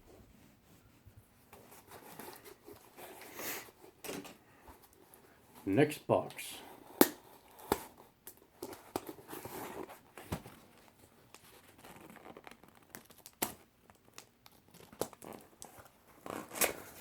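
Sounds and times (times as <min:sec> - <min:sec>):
packaging crinkling: 0:08.6 - 0:17.0
tape and cardboard tearing: 0:11.7 - 0:17.0.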